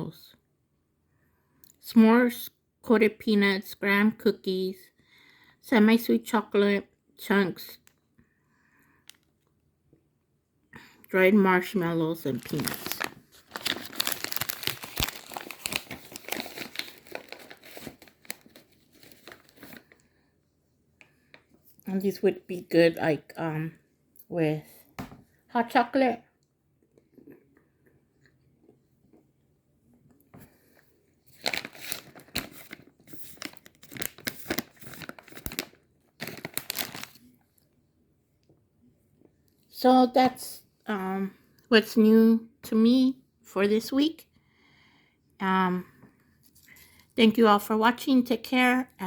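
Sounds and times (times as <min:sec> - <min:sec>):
snack bag crinkling: 0:12.2 - 0:20.2, 0:30.7 - 0:37.4.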